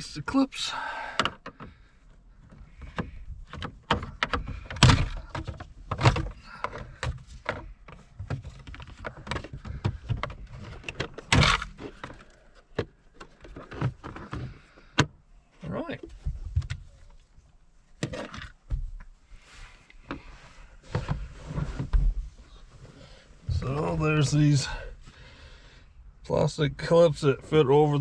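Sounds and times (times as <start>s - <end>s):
plastic trim clicking and creaking: 2.4s - 15.2s.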